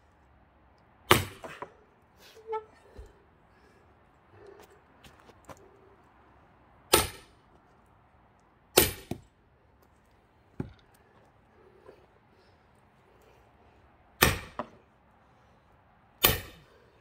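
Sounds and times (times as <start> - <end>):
axe striking log: 1.1 - 1.7, 6.9 - 7.3, 8.8 - 9.3, 10.6 - 10.9, 14.2 - 14.8, 16.2 - 16.7.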